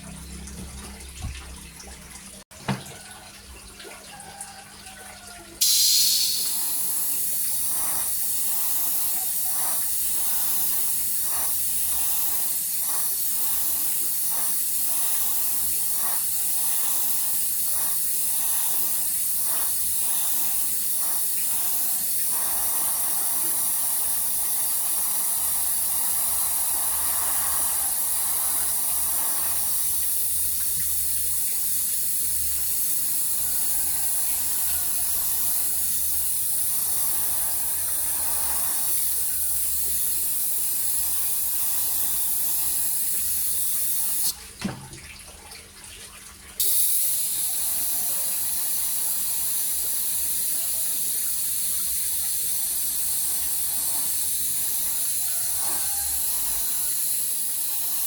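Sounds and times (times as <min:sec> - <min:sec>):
airbrush click: 0:05.6 - 0:17.0
airbrush hiss: 0:05.6 - 0:44.4, 0:46.6 - 0:58.0.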